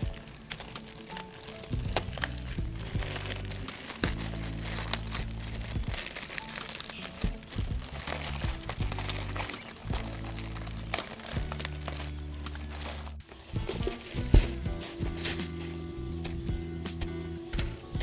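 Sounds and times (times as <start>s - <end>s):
background music with low notes: 0.0s - 18.0s
packaging crinkling and rustling: 0.0s - 18.0s.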